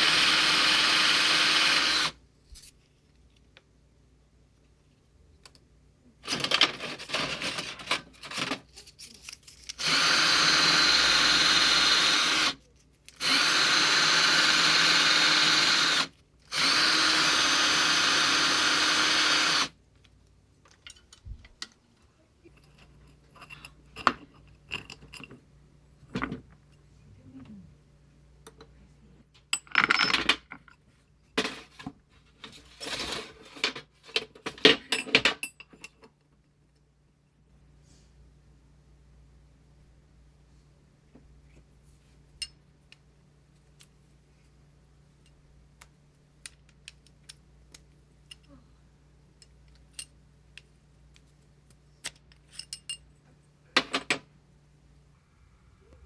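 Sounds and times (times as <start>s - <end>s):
handheld power tool running: 0.0s - 2.2s, 9.8s - 12.6s, 13.2s - 19.7s
parts and tools clattering: 6.2s - 9.8s, 22.5s - 25.5s, 29.4s - 36.2s, 53.8s - 54.3s.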